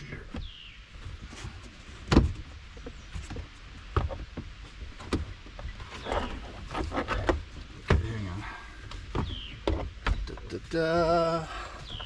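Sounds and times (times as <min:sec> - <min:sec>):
knocks and clicks of car trim: 0:02.0 - 0:02.5, 0:08.9 - 0:10.5.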